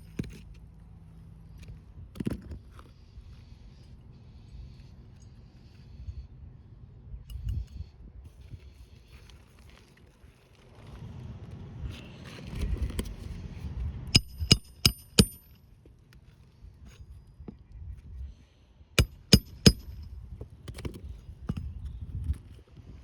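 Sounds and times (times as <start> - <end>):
hammer striking nails: 14.2 - 15.6, 19.0 - 20.1.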